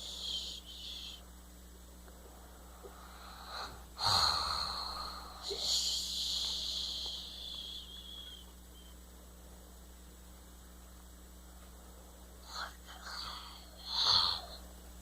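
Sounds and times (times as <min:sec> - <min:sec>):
long hissing breath: 0:00.0 - 0:01.2, 0:02.4 - 0:08.4, 0:12.4 - 0:14.6.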